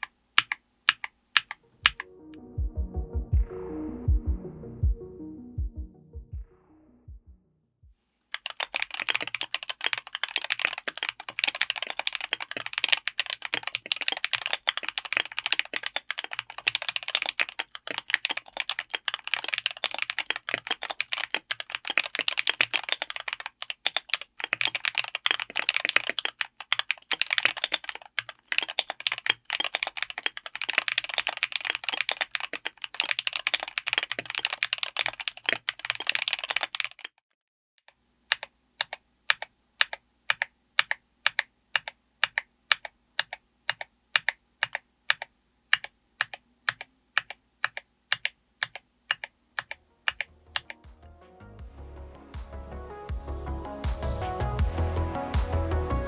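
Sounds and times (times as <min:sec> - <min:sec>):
fast typing on mechanical keyboard: 0:00.0 - 0:02.0, 0:08.4 - 0:37.2, 0:38.3 - 0:50.8.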